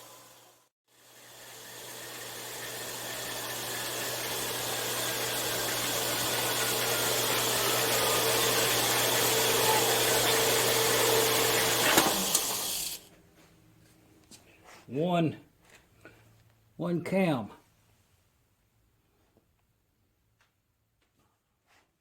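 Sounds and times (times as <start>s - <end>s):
power saw cutting metal: 0.0s - 13.0s.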